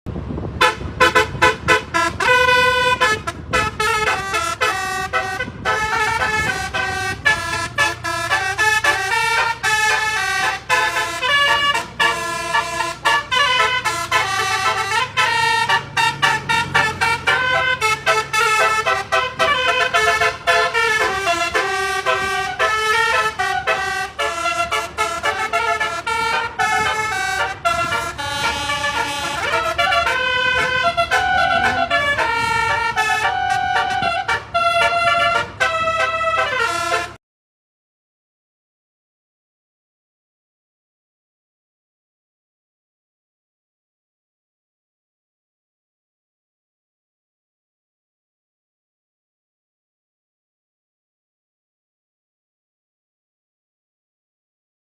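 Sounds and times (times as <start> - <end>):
low engine hum: 0.1 - 37.2
multi-tone musical bus horn: 0.1 - 37.2.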